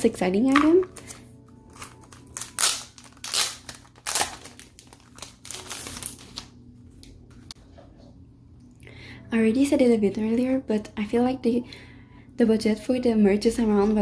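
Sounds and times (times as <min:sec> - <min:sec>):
packaging rustling and crinkling: 0:00.5 - 0:06.6.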